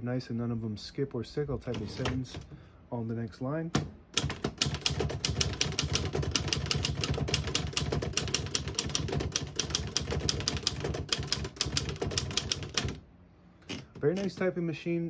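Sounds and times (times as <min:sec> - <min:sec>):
manual typewriter typing: 0:01.7 - 0:02.5, 0:03.8 - 0:13.0, 0:13.6 - 0:14.5.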